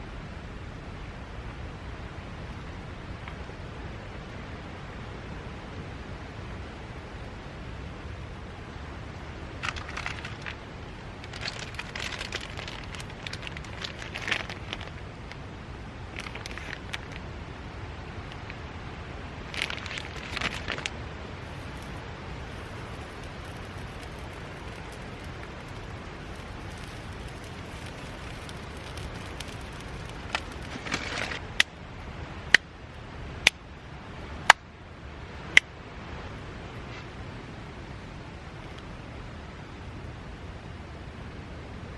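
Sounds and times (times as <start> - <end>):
low fire rumble: 0.0 - 41.9
wood fire crackling: 8.1 - 34.6
short rustle: 9.6 - 17.3, 19.4 - 31.5.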